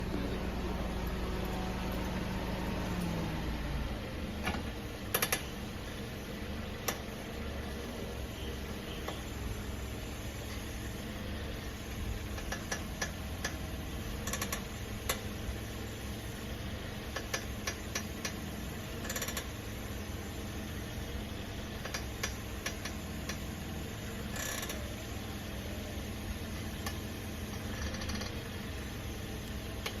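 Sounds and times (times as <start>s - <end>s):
car engine idling: 0.0s - 30.0s
steering clicks and knocks: 4.4s - 5.6s, 6.8s - 7.2s, 12.2s - 15.4s, 17.1s - 19.6s, 21.7s - 23.6s, 26.5s - 28.4s.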